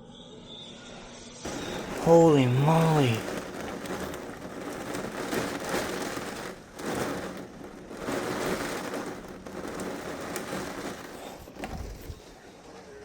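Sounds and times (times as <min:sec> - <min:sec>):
heavy rain: 0:01.5 - 0:12.2.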